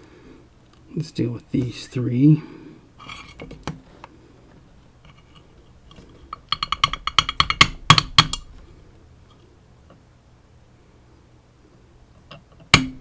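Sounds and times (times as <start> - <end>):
metallic taps and clicks: 5.9 - 8.5.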